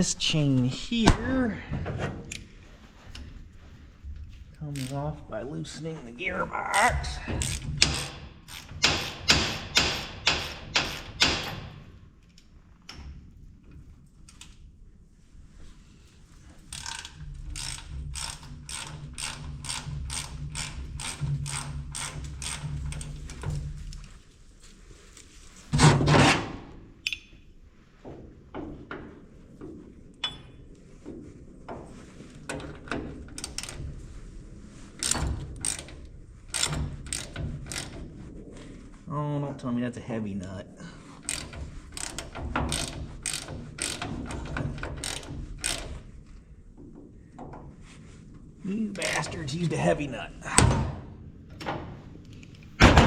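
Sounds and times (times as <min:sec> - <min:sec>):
hand tools and metal parts clanking: 0:06.7 - 0:11.8, 0:27.0 - 0:27.6, 0:30.2 - 0:30.6, 0:34.9 - 0:38.1, 0:41.0 - 0:46.1.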